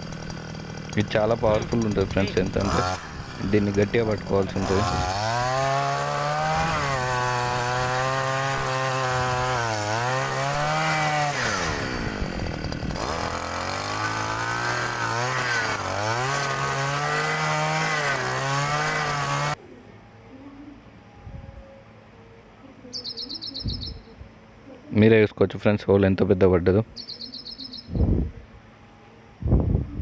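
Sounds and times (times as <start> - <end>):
two-stroke engine running hard: 0.0 - 19.6.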